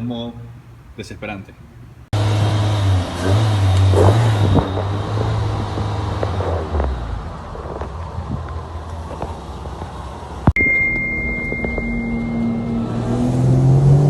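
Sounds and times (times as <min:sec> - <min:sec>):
car engine misfiring: 0:02.2 - 0:10.6.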